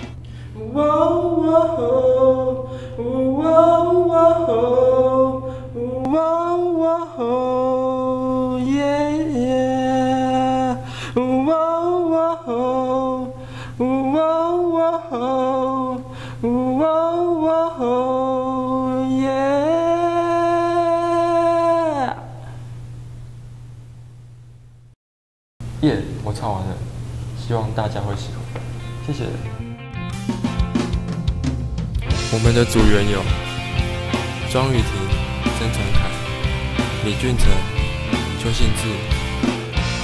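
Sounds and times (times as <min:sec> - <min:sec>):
person singing wordless melody: 0:00.0 - 0:22.6, 0:32.0 - 0:39.8.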